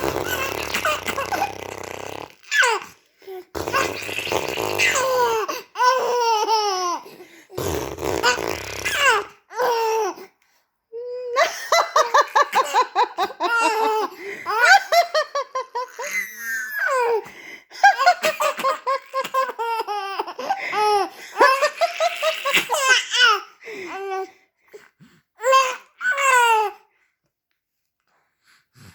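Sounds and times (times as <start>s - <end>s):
baby laughing: 0.0s - 2.9s, 3.6s - 7.1s, 8.2s - 10.2s, 11.3s - 17.2s, 17.8s - 23.4s.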